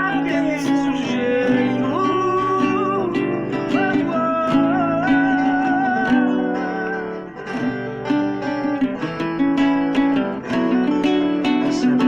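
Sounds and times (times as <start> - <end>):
person singing long note: 0.0 - 7.6
acoustic guitar strumming: 0.0 - 12.0.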